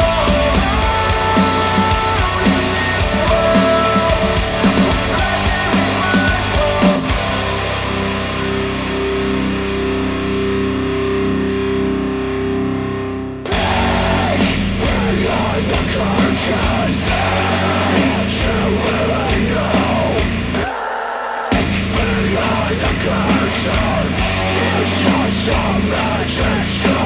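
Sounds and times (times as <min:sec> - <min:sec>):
rock music through speakers: 0:00.0 - 0:20.7, 0:21.5 - 0:27.0.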